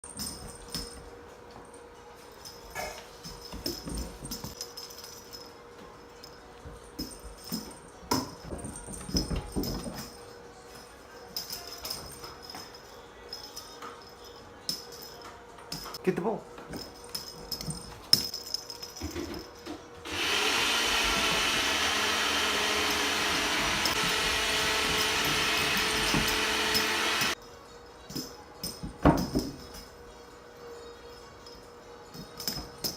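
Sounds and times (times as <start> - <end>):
electric appliance motor whirring: 20.1 - 27.4.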